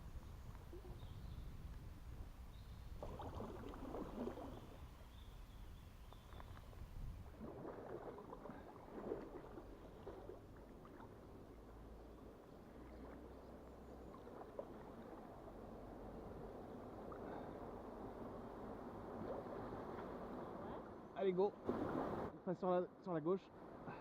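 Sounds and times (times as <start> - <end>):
river water running: 0.0 - 22.4
small splashes: 2.9 - 5.0, 7.2 - 16.1.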